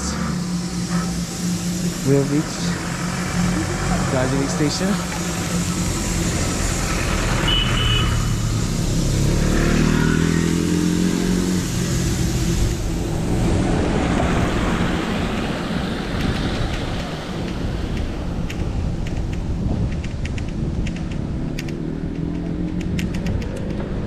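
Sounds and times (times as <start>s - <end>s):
vehicle engine passing: 0.0s - 18.9s
traffic rumble: 0.0s - 24.0s.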